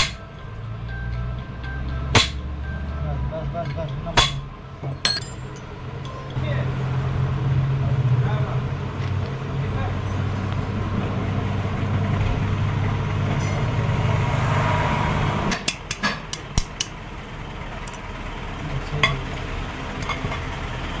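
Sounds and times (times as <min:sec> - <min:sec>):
sharp metallic clinks: 0:00.0 - 0:06.2
tractor engine running: 0:00.0 - 0:21.0.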